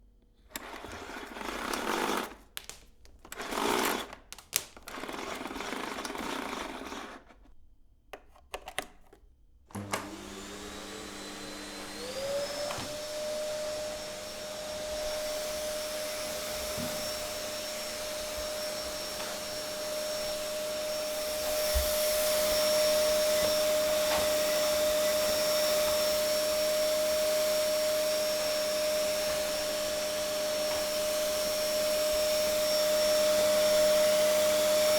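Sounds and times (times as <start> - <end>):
vacuum cleaner motor whine: 9.7 - 34.9
handling noises: 11.7 - 26.4.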